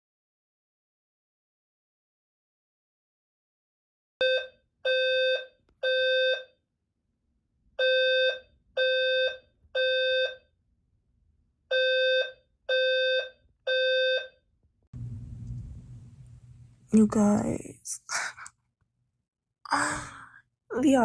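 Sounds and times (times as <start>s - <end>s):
fire alarm horn beeping: 7.8s - 10.4s, 11.7s - 14.3s.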